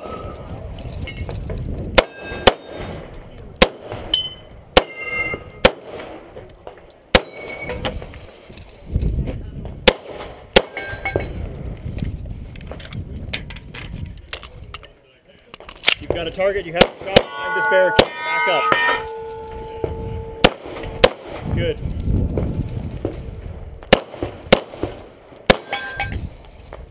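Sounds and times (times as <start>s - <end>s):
metallic ring of steel targets: 4.2s - 5.6s, 17.0s - 21.1s
pistol shots: 19.8s - 21.4s, 23.9s - 25.9s.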